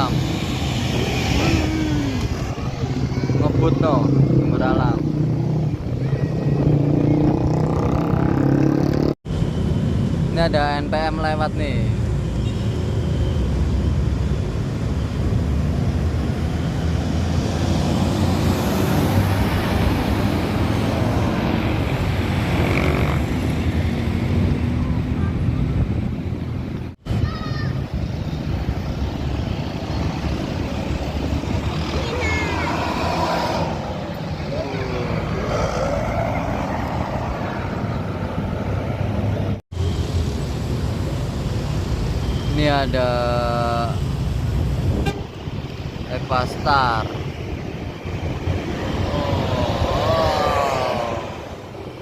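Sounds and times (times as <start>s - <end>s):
low rumble of traffic: 0.0s - 52.0s
bus passing close by: 15.4s - 27.0s, 28.1s - 42.3s, 46.9s - 52.0s.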